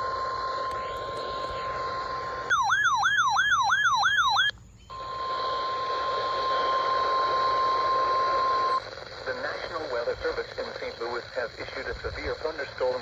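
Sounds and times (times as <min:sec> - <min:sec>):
steady warning alarm tone: 0:00.0 - 0:08.8.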